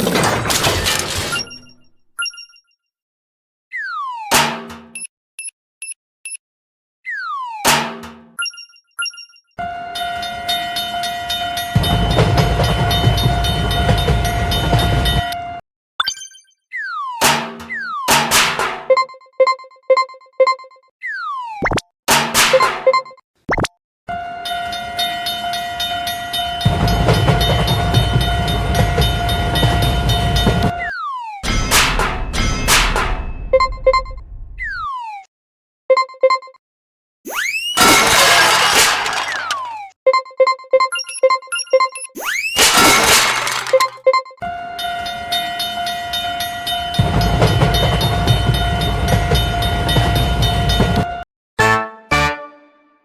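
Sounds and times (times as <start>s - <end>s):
railroad crossing bell ringing: 9.9s - 15.4s, 24.4s - 30.7s, 44.8s - 51.0s
train rumbling: 11.6s - 15.3s, 26.4s - 30.7s, 46.0s - 51.0s
level crossing bell ringing: 44.8s - 51.0s.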